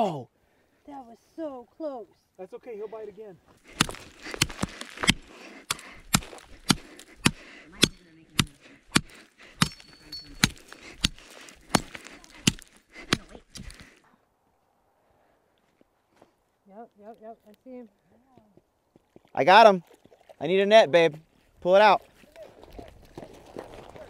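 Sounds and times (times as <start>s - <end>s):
axe chopping ice: 3.7s - 13.9s.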